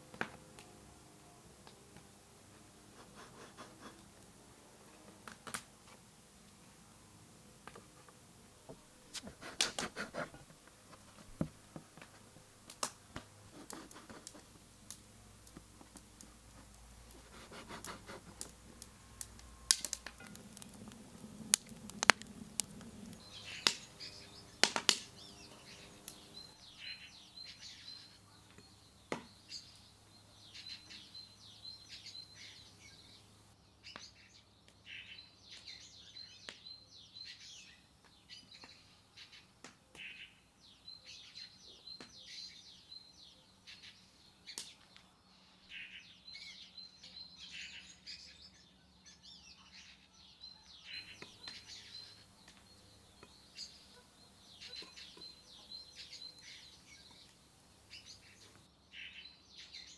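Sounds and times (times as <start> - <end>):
small birds chirping: 2.5 - 59.9.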